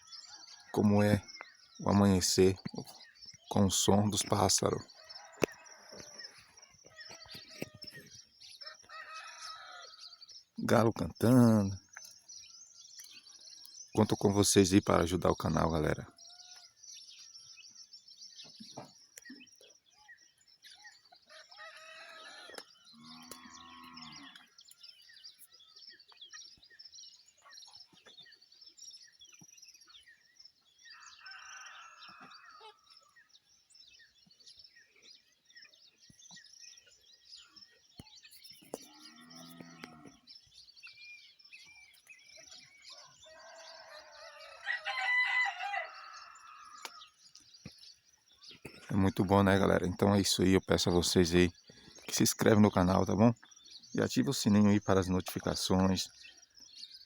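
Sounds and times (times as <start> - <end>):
small birds chirping: 0.0 - 57.0
rooster crowing: 5.0 - 6.3, 8.7 - 10.0, 30.9 - 32.8, 42.8 - 47.0.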